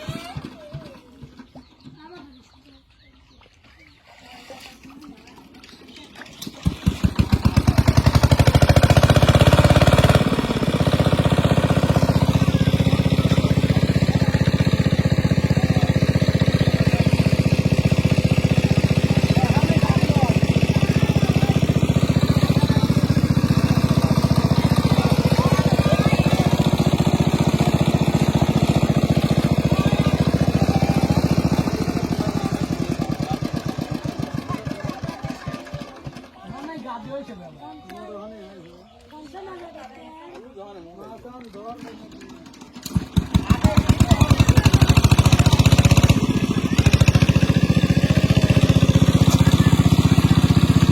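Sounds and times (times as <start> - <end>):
small engine running: 0.0 - 1.9, 6.3 - 36.8, 42.1 - 50.9.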